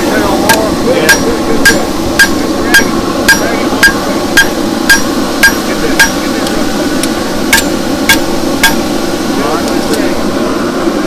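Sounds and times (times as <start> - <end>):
hammer ringing on anvil: 0.5 - 6.3, 7.6 - 9.0.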